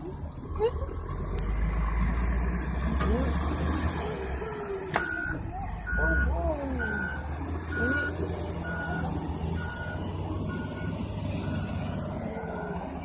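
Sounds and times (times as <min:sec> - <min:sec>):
diesel engine rumble: 0:00.0 - 0:13.0
back-up alarm beeping: 0:05.0 - 0:12.8.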